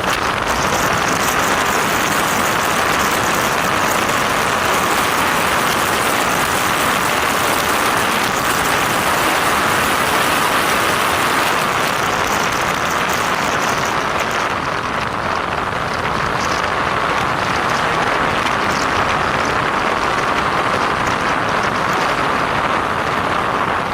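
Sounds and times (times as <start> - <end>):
wind and road noise: 0.0 - 23.9.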